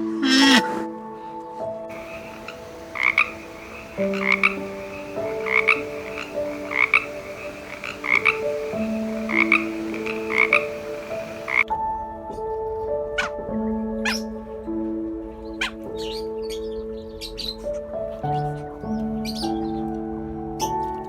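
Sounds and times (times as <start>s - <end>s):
frog croaking: 0.0s - 1.0s, 1.9s - 11.6s.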